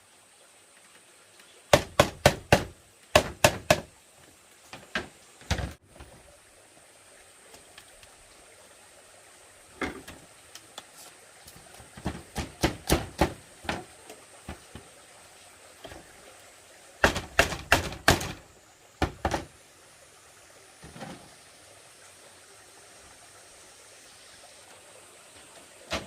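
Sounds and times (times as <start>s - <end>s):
bamboo knocking: 1.7s - 3.9s, 12.0s - 14.9s, 17.0s - 18.4s, 19.0s - 19.5s.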